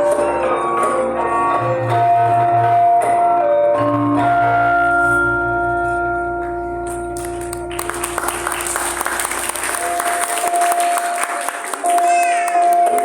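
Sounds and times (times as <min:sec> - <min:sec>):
audience applause: 0:07.2 - 0:13.0.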